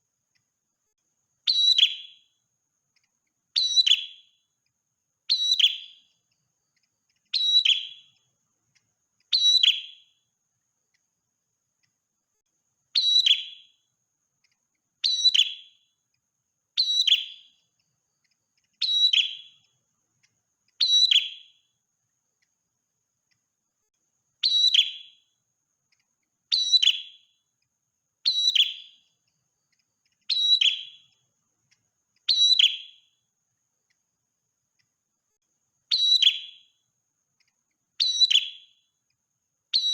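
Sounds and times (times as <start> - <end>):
small bird singing high call: 1.4 - 11.1, 12.8 - 23.5, 24.3 - 34.1, 35.8 - 39.9.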